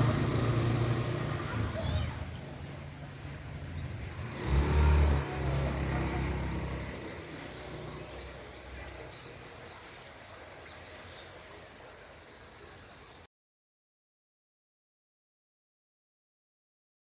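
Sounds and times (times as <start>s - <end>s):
vehicle passing by: 0.0s - 11.5s
small birds chirping: 0.0s - 13.3s.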